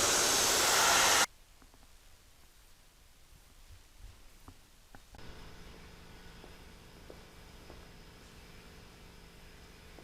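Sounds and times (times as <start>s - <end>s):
steady low hum: 4.1s - 10.0s.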